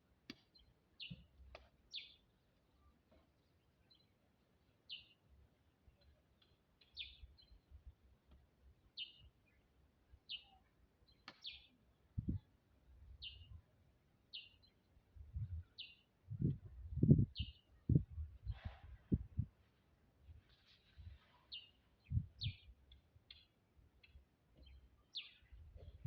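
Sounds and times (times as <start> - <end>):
bird chirping: 6.1 - 7.7, 9.0 - 9.7, 10.3 - 12.4, 13.2 - 13.6, 14.3 - 16.5, 17.3 - 18.0, 20.8 - 26.0.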